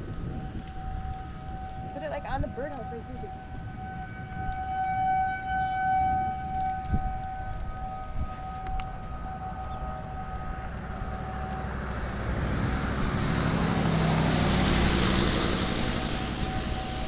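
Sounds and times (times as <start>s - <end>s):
siren steady tone: 0.0s - 17.0s
low hum: 3.2s - 17.0s
broad rushing noise: 11.6s - 17.0s.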